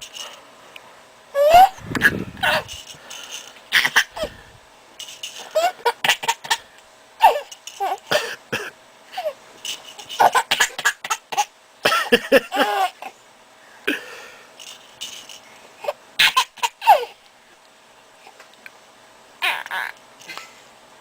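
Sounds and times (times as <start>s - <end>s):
baby laughing and squealing: 1.4s - 2.7s, 7.2s - 8.0s, 19.4s - 20.0s.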